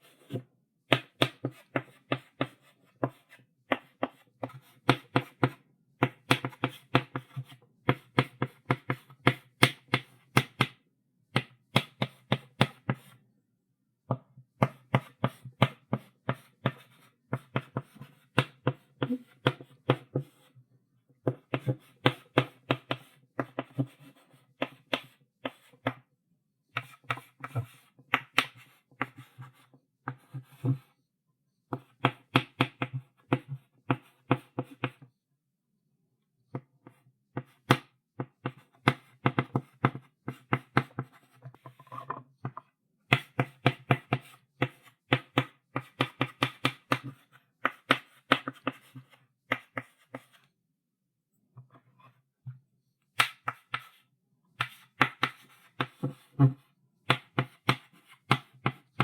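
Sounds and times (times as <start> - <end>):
chalk tapping on blackboard: 36.8 - 50.4, 53.2 - 54.0, 54.6 - 59.0.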